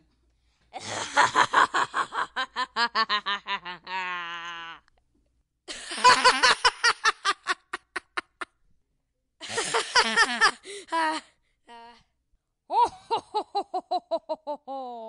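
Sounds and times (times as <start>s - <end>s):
person laughing: 0.8s - 4.8s, 5.7s - 8.5s, 9.4s - 11.3s, 12.7s - 15.0s.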